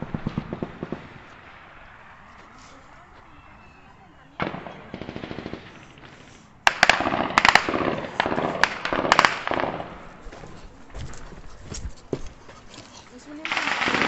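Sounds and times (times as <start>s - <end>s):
automatic gunfire bursts: 4.4s - 10.2s, 13.4s - 14.0s.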